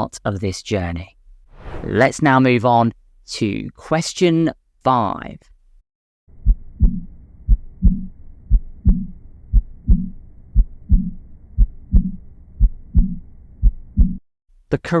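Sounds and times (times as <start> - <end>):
heart murmur: 6.3 - 14.2
heartbeat clicks: 6.3 - 14.2.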